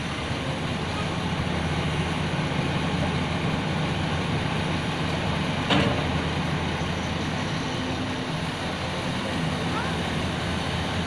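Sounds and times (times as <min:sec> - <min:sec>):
heavy diesel engine running: 0:00.0 - 0:11.0.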